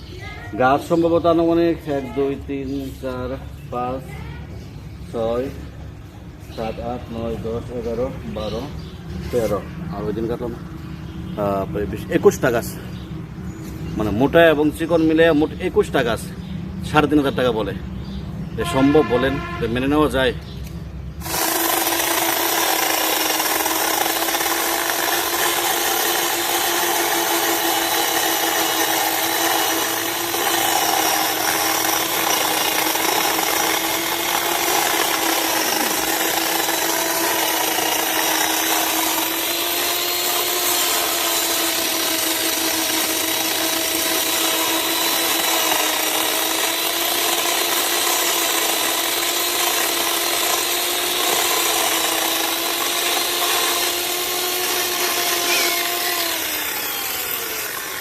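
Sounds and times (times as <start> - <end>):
chainsaw cutting wood: 21.2 - 58.0.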